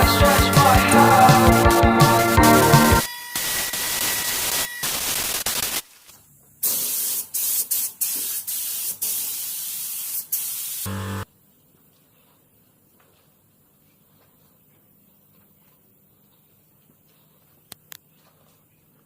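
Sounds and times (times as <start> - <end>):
spray paint hissing: 3.4 - 11.2.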